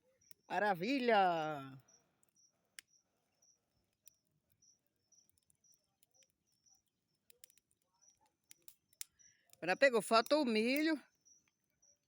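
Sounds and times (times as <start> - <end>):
cricket chirping: 0.0 - 6.8, 7.4 - 12.0
faint clicks: 5.1 - 9.6.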